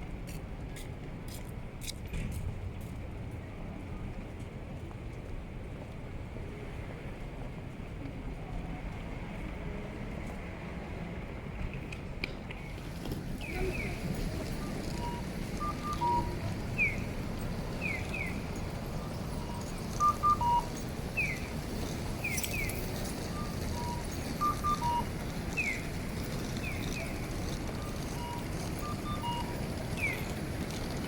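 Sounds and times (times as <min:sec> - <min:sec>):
street noise: 0:00.0 - 0:31.0
electronic bird-like chirps: 0:14.6 - 0:17.2, 0:19.4 - 0:21.5, 0:23.4 - 0:25.9.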